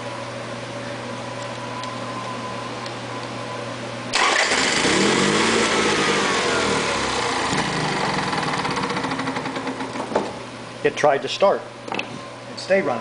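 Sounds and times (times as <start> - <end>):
generator engine cranking and running: 4.1 - 10.4.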